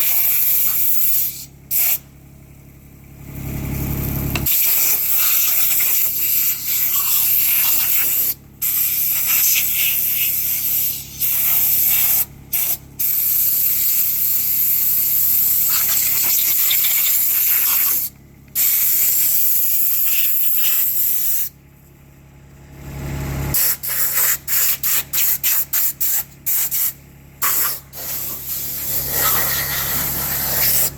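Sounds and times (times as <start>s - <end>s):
spray nozzle hissing: 4.4s - 12.8s, 15.5s - 21.5s, 23.6s - 30.9s.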